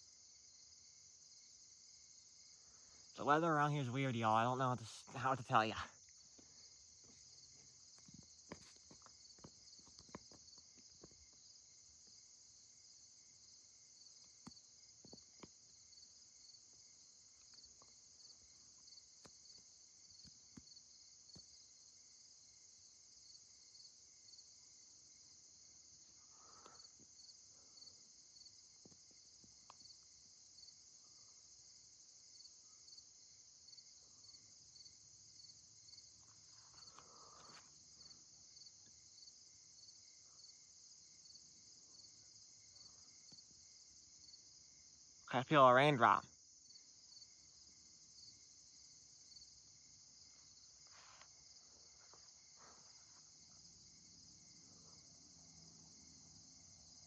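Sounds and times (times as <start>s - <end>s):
night insect chorus trilling: 0.0s - 57.0s
faint ticks: 26.4s - 27.1s, 28.8s - 30.1s, 36.2s - 37.8s.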